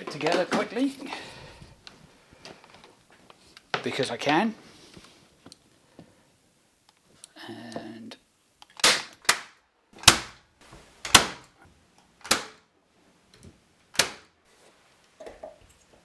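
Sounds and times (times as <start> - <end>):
hammer driving nails into wood: 8.8 - 10.4, 11.1 - 11.5, 12.2 - 12.6, 14.0 - 14.3.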